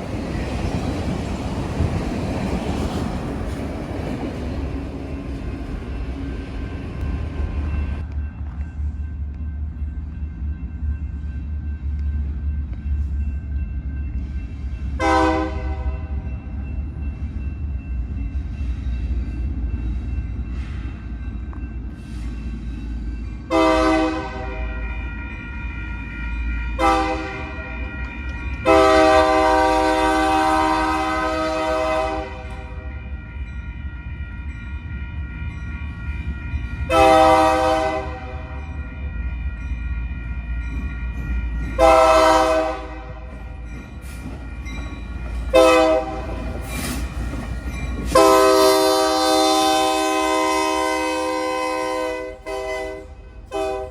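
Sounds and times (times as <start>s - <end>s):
train rumble: 0.0s - 53.9s
locomotive air horn blasts: 15.0s - 16.1s, 23.5s - 24.8s, 26.8s - 27.8s, 28.6s - 32.9s, 36.9s - 38.4s, 41.8s - 43.3s, 45.5s - 46.2s, 48.1s - 53.9s.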